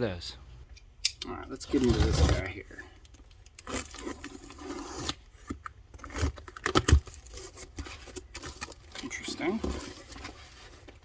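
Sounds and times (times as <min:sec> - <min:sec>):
cardboard box clicks and rustles: 0:06.0 - 0:11.0.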